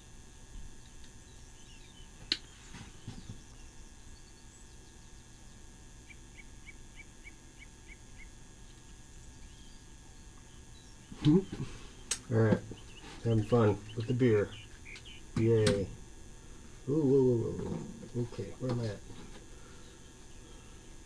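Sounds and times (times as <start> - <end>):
birds chirping: 0.7 - 21.0.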